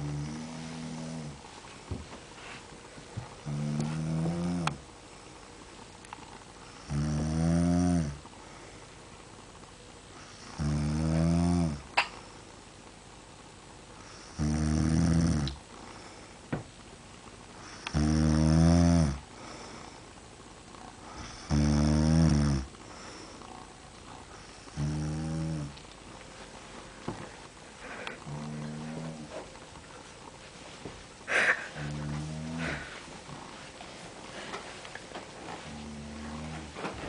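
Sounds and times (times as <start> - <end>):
person snoring loudly: 6.8 - 8.2, 10.4 - 11.8, 14.3 - 15.6, 17.8 - 19.2, 21.1 - 22.7, 24.7 - 25.7.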